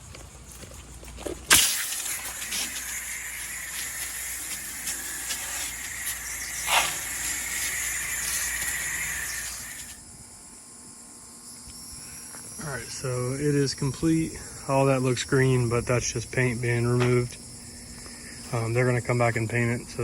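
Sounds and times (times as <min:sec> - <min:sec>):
pressure washer spraying water: 0:01.5 - 0:10.0.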